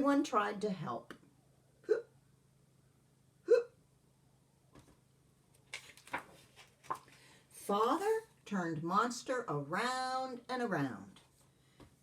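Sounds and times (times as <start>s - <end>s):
woman imitating hiccups: 1.8s - 2.1s, 3.4s - 3.8s.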